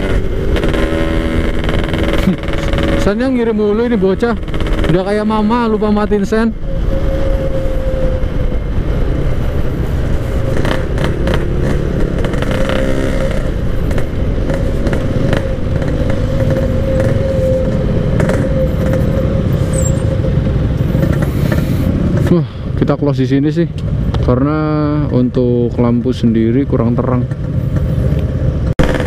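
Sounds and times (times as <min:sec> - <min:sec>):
two-stroke motorcycle engine running: 0:00.0 - 0:03.4, 0:28.8 - 0:29.0.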